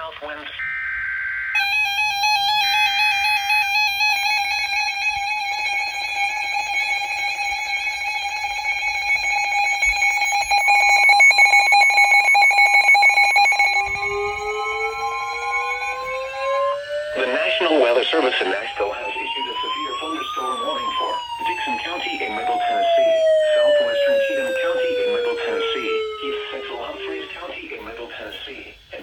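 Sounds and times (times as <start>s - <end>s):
loud electronic alarm tone: 0.6s - 27.9s
rising tones: 1.3s - 27.8s
warbling digital data burst: 9.6s - 27.7s.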